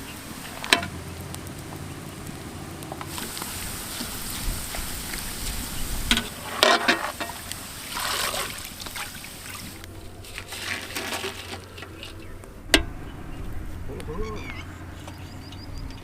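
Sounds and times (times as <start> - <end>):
onions sizzling in oil: 0.0 - 11.5.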